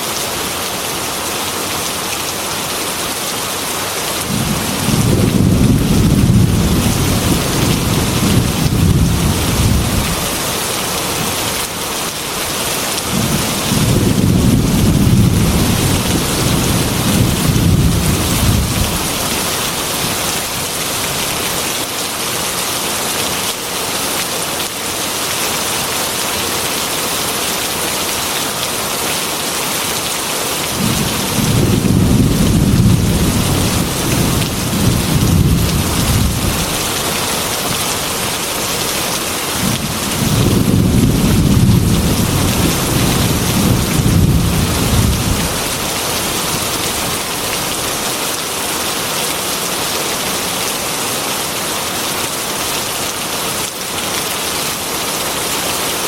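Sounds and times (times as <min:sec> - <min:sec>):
rain on a glass window: 0:00.2 - 0:56.0
thunder rumbling: 0:04.3 - 0:10.4, 0:13.1 - 0:20.2, 0:30.8 - 0:37.2, 0:39.6 - 0:47.1.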